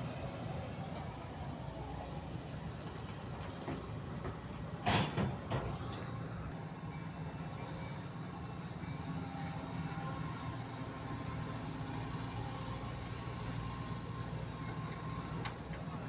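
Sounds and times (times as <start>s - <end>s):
metallic clank and creak: 3.5s - 6.1s.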